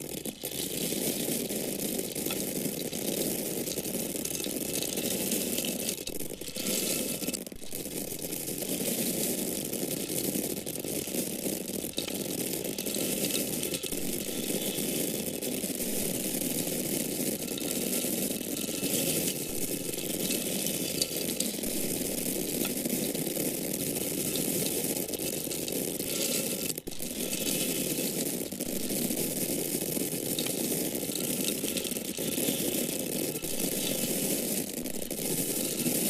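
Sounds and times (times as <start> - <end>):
dry grain pouring: 0.0 - 36.0.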